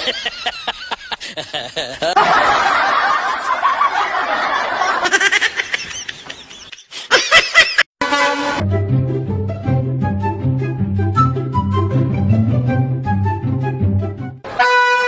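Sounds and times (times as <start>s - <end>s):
people laughing: 0.0s - 7.9s.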